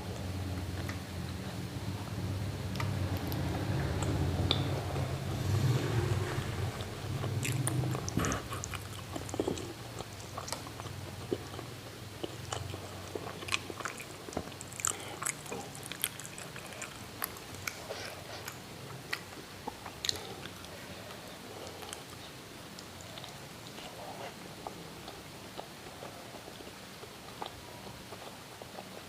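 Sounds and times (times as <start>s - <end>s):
low hum: 0.0s - 10.4s
chewing and biting food: 6.7s - 29.0s.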